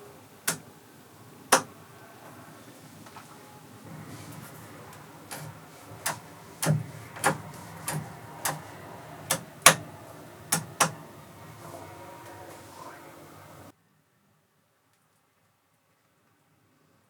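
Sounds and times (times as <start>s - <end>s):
low steady background: 0.0s - 17.0s
sharp clicks or knocks: 0.5s - 0.7s, 1.5s - 1.7s, 4.4s - 9.9s, 10.5s - 11.0s.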